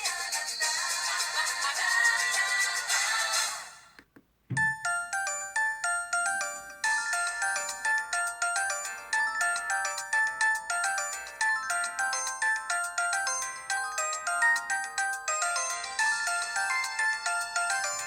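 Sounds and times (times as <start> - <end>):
synthesized phone ringtone: 4.6 - 18.0.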